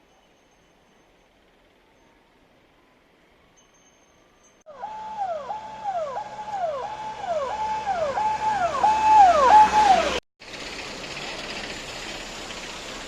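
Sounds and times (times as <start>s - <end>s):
electronic siren wailing: 4.7s - 10.2s.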